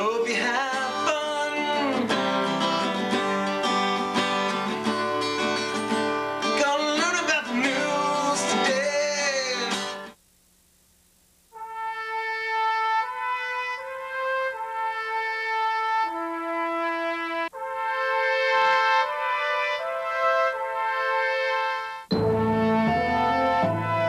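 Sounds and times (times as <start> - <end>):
person singing: 0.0 - 3.5, 6.4 - 10.1
strummed acoustic guitar: 0.0 - 10.1, 22.1 - 24.0.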